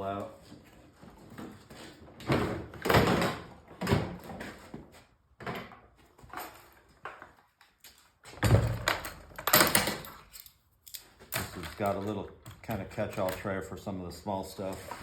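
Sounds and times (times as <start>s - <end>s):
tool case clunks and rattles: 2.2s - 4.5s, 8.3s - 10.2s.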